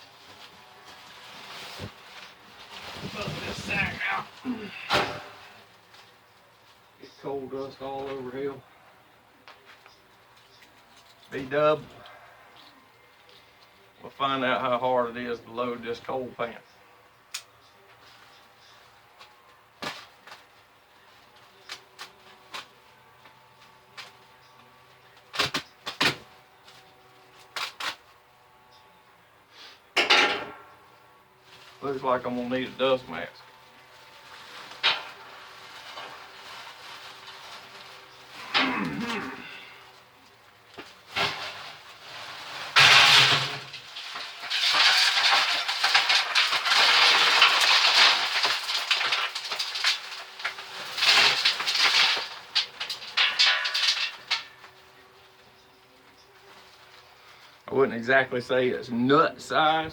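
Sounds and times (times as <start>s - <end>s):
coal lumps clattering into metal pan: 1.8s - 5.6s, 30.0s - 30.7s, 34.4s - 39.8s, 40.8s - 54.8s.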